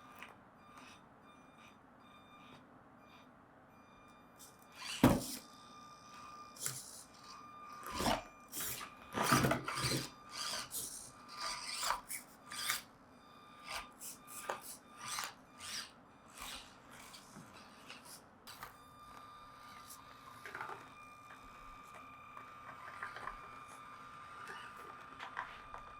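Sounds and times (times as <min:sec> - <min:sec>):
thin motor whine: 0:00.0 - 0:25.9
toy car scraping and knocking: 0:04.4 - 0:05.4, 0:06.6 - 0:12.9, 0:13.6 - 0:18.8, 0:19.7 - 0:21.0, 0:24.4 - 0:25.9.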